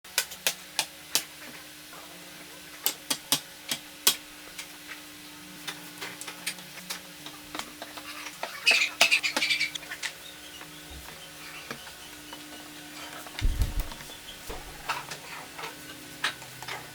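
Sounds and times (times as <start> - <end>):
scraping on wood: 13.4 - 15.0.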